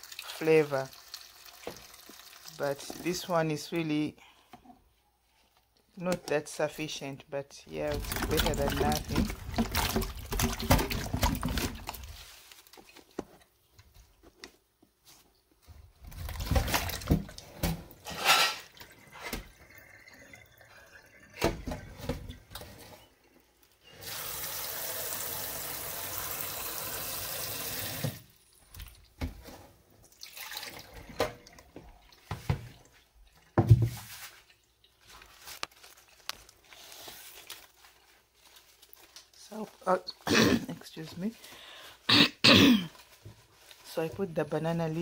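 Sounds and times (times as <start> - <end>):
tap water running into pot: 0.0 - 3.2, 23.9 - 29.3, 30.1 - 32.6
pot clattering: 18.0 - 19.5.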